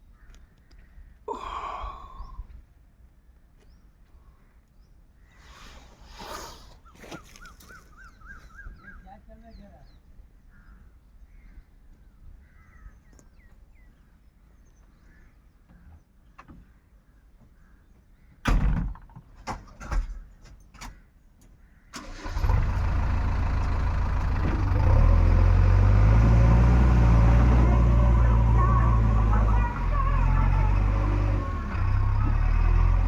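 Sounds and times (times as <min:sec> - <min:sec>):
diesel engine running: 0:22.0 - 0:33.0.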